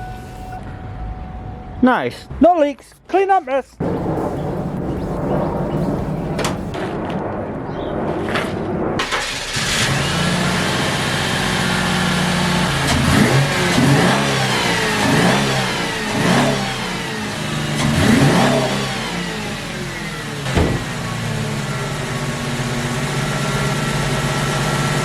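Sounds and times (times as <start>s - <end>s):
car engine idling and revving: 9.0s - 25.0s
sharp knock: 20.5s - 21.0s.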